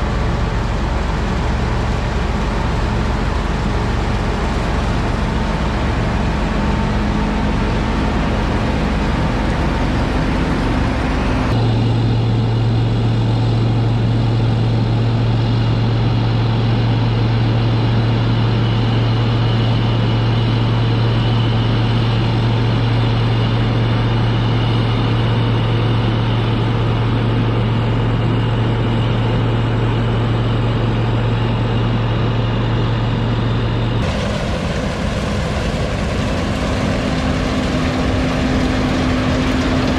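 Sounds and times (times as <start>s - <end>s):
heavy machinery engine running: 0.0s - 15.3s, 20.8s - 39.9s
strong low hum: 33.6s - 39.9s.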